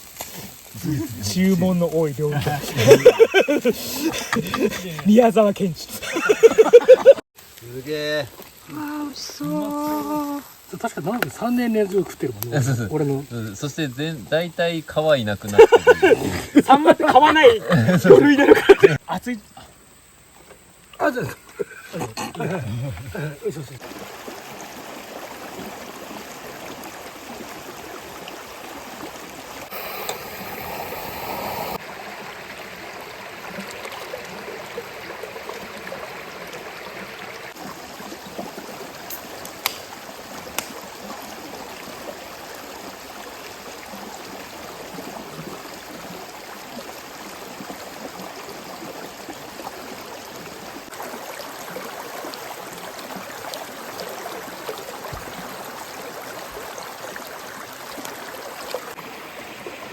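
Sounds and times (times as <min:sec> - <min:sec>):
mountain stream flowing: 0:00.0 - 0:59.9.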